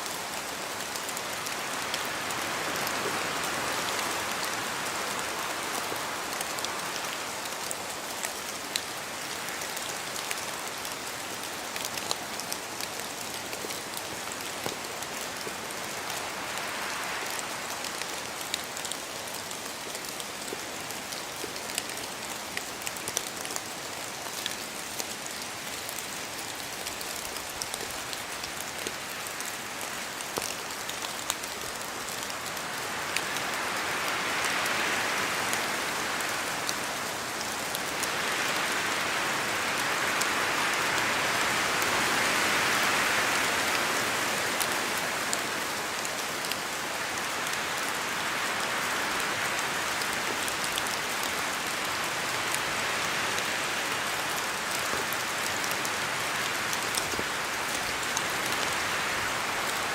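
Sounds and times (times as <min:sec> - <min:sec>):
wind through trees: 0:00.0 - 0:59.9.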